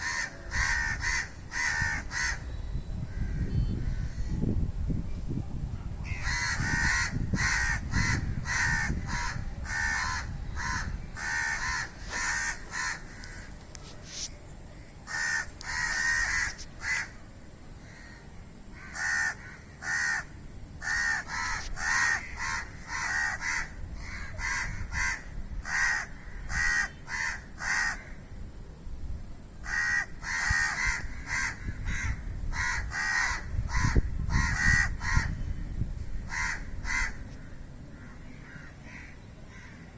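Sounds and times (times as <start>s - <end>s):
crow cawing: 0.0s - 2.4s, 6.1s - 13.5s, 15.1s - 17.2s, 17.8s - 28.2s, 29.6s - 35.4s, 36.3s - 39.9s.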